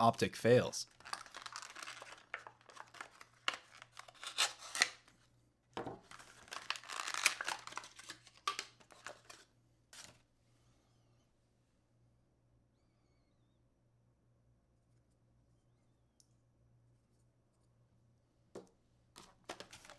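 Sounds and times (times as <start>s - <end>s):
packaging crinkling and tearing: 0.8s - 5.1s, 5.9s - 9.4s, 10.0s - 10.2s, 19.4s - 19.9s.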